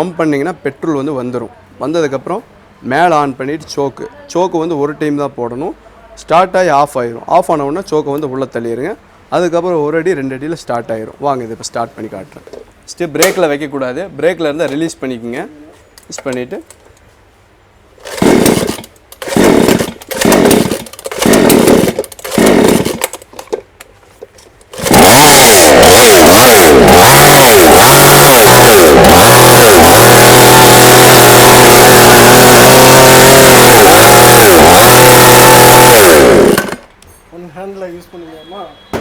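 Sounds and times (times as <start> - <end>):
chainsaw engine revving: 18.0 - 23.2, 24.7 - 36.9
chainsaw pull cord: 18.0 - 23.6, 24.4 - 36.9.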